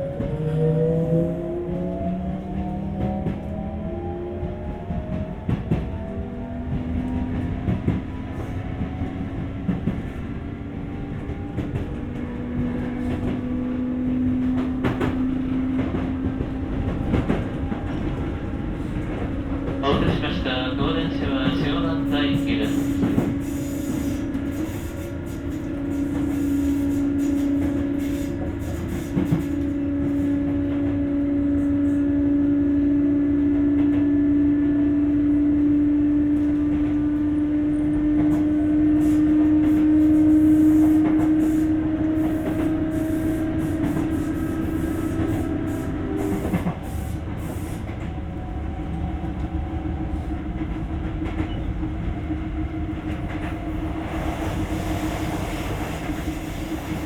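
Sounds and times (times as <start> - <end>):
rail-joint clicks: 14.4 - 30.3.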